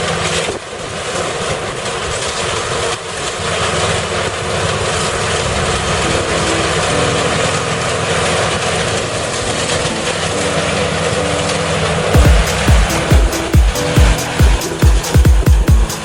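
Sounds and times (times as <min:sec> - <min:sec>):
combine harvester running: 0:00.0 - 0:16.0
music with thumping bass: 0:12.2 - 0:16.0.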